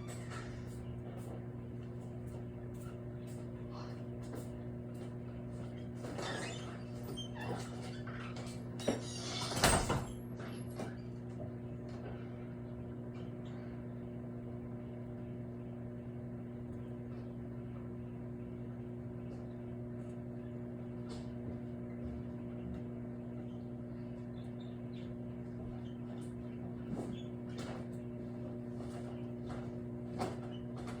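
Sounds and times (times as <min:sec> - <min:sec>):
microwave oven humming: 0:00.0 - 0:31.0.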